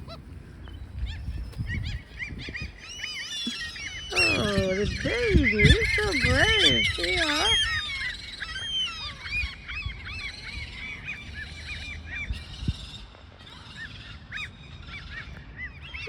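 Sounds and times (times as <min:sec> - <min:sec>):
gulls calling: 0:00.0 - 0:09.7.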